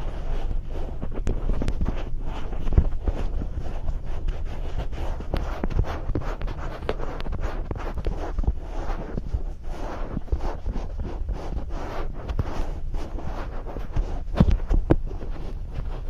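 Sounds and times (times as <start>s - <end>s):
rubbing and crackling on microphone: 0.0s - 16.0s
soft low thumps: 0.0s - 16.0s.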